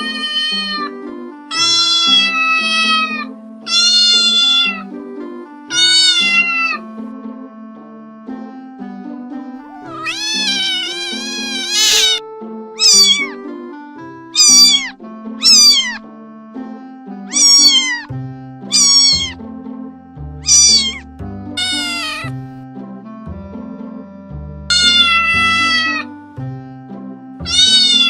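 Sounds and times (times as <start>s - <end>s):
cat meowing: 0.0s - 0.9s, 1.5s - 4.9s, 5.7s - 6.8s, 9.6s - 12.2s, 12.8s - 13.4s, 14.4s - 16.0s, 17.3s - 18.1s, 18.7s - 19.4s, 20.4s - 21.0s, 21.6s - 22.4s, 24.7s - 26.1s, 27.4s - 28.0s
background music: 0.0s - 28.0s.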